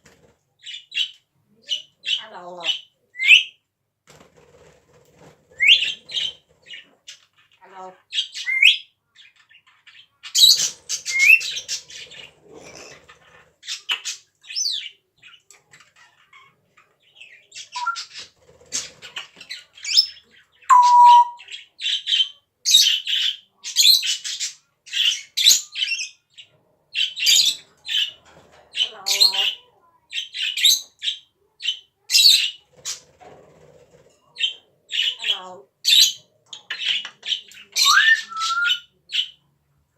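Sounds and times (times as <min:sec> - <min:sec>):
parrot calls and chirps: 0:05.6 - 0:28.2, 0:34.4 - 0:39.4
parrot whistled note: 0:20.7 - 0:21.4.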